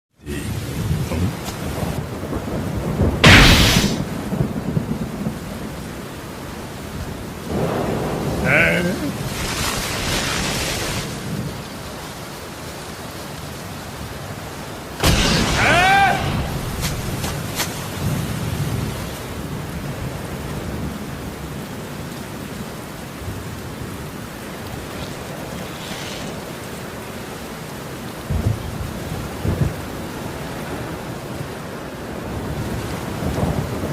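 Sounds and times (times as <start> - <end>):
steady rain: 0.1 - 33.9
thunder clap rumbling: 0.2 - 6.1, 6.8 - 11.8, 15.0 - 21.0, 32.2 - 33.9.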